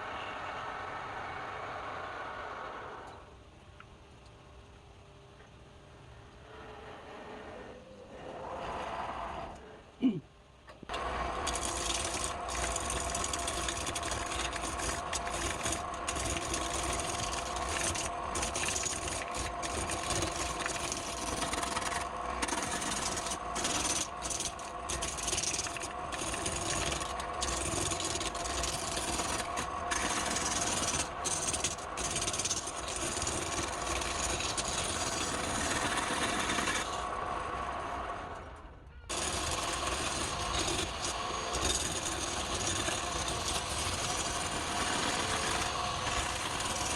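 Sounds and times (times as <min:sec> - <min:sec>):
wood lathe humming: 0:10.9 - 0:38.0, 0:39.1 - 0:46.9
tool scraping spinning wood: 0:10.9 - 0:38.4, 0:39.1 - 0:46.9.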